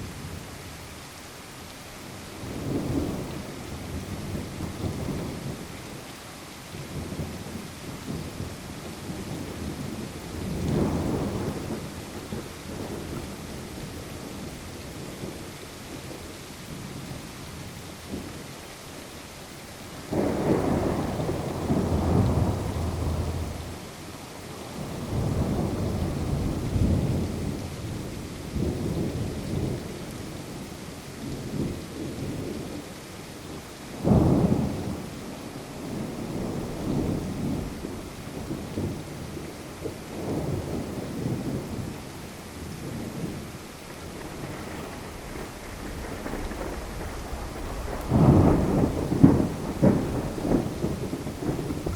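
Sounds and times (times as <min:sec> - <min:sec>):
steady rain: 0:00.0 - 0:51.9
rolling thunder: 0:06.8 - 0:15.3, 0:20.1 - 0:23.8, 0:24.8 - 0:30.3, 0:34.0 - 0:42.0, 0:42.6 - 0:51.9
loud thunderclap: 0:09.3 - 0:11.9, 0:20.1 - 0:23.7, 0:34.0 - 0:35.0, 0:44.0 - 0:51.9.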